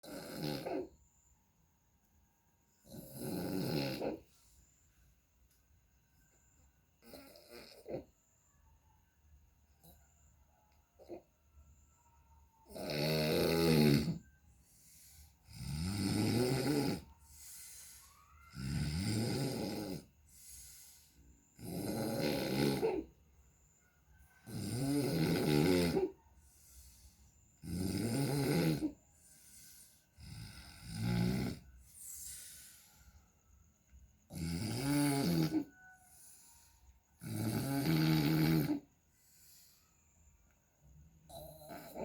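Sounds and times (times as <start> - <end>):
person snoring loudly: 0.0 - 1.0, 2.8 - 4.3, 7.0 - 8.1, 12.6 - 14.3, 14.9 - 23.1, 24.5 - 26.2, 27.6 - 32.9, 34.2 - 38.9, 41.3 - 42.0
soft breaths: 14.2 - 15.5, 17.0 - 18.5, 20.1 - 21.6, 26.2 - 27.6, 29.0 - 30.4, 31.6 - 34.0, 35.7 - 37.1, 38.8 - 42.0.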